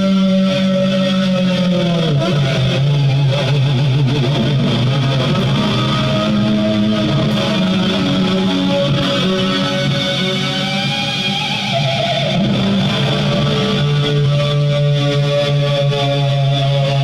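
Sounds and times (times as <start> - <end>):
electric guitar playing: 0.0 - 17.0.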